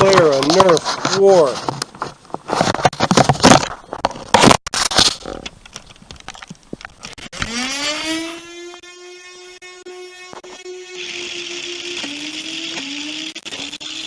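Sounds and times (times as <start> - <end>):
rising pitched tone: 7.1 - 14.0.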